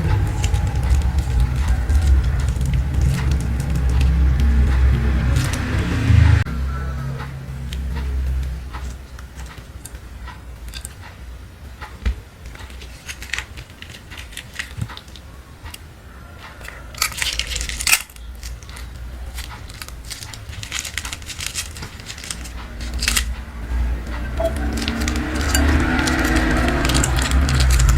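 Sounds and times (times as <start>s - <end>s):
slime and plastic crackling: 0.0s - 6.1s, 7.6s - 11.1s, 11.8s - 27.9s.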